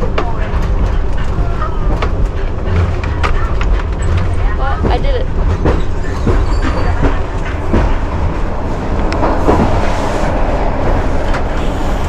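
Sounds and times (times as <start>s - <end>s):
train rumble inside carriage: 0.0s - 12.0s
wheels clacking over rail joints: 0.0s - 12.0s.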